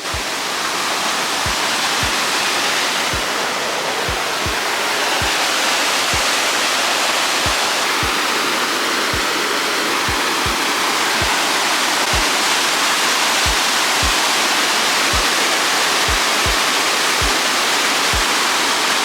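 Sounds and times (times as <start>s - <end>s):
waterfall rushing: 0.0s - 19.0s
background music kick drum: 7.4s - 8.3s, 13.4s - 14.3s, 15.1s - 15.3s, 16.1s - 16.6s.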